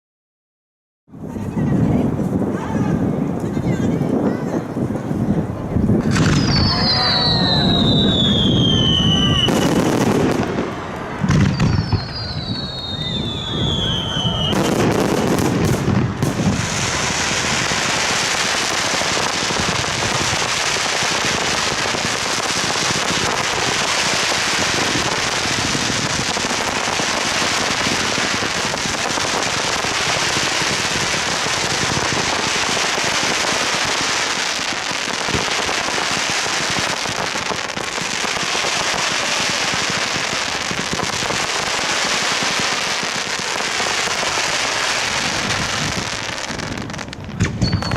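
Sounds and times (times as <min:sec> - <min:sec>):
fireworks crackling: 0:01.2 - 0:47.9
firework boom: 0:05.7 - 0:17.9.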